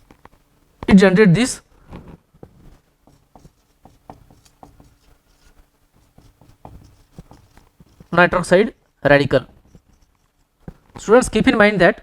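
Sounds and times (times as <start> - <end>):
faint room hum: 0.0 - 12.0
pen scratching while writing: 2.6 - 8.2.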